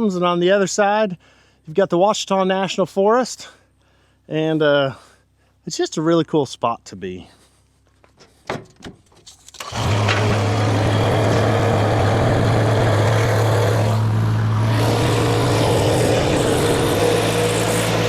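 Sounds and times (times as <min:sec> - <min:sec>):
engine starting and running: 0:09.2 - 0:18.0.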